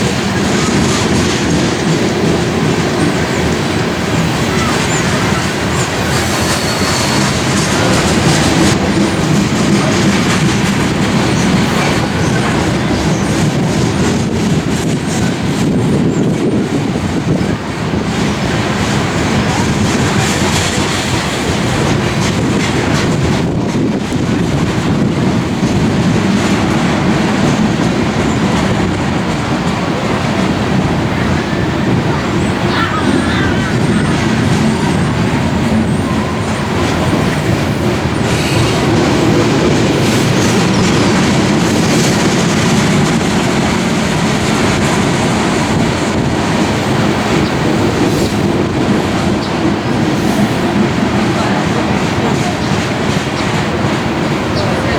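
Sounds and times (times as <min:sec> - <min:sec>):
freight train rumble: 0:00.0 - 0:54.9
wheels clacking over rails: 0:00.0 - 0:54.9
faint wheel squeal: 0:04.3 - 0:08.5.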